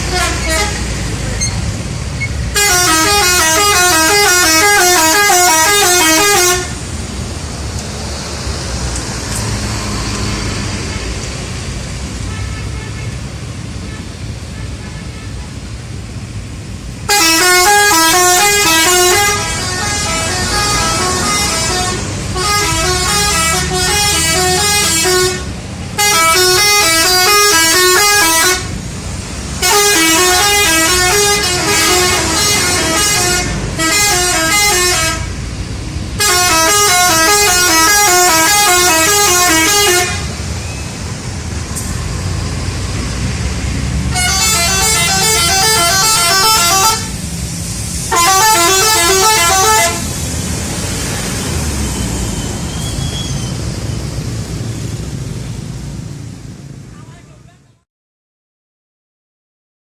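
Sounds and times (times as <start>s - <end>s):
bus horns playing melodic tunes: 0.0s - 7.0s, 12.1s - 15.7s, 17.0s - 28.9s, 29.5s - 35.5s, 36.1s - 40.9s, 44.0s - 47.3s, 47.9s - 53.6s
bus engines rumbling: 0.0s - 57.8s.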